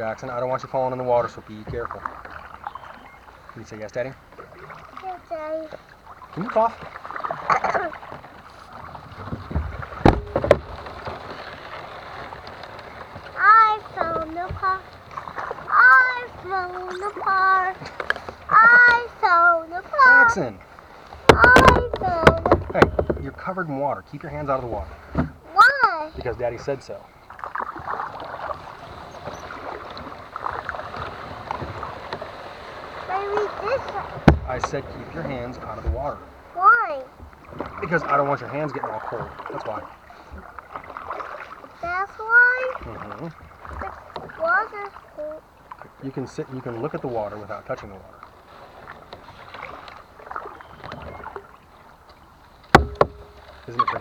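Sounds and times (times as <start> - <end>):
water wash from paddling: 0.0 - 54.0
sharp knocks: 9.2 - 11.5, 21.3 - 23.5, 33.8 - 34.8, 52.6 - 54.0
wind noise: 21.2 - 23.5.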